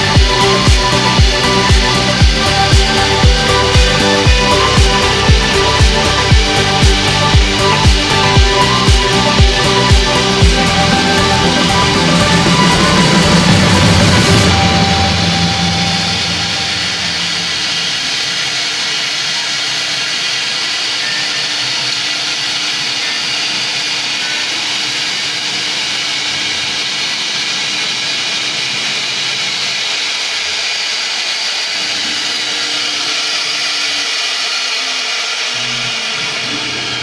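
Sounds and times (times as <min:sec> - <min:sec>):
router spindle cutting wood: 0:00.0 - 0:37.0.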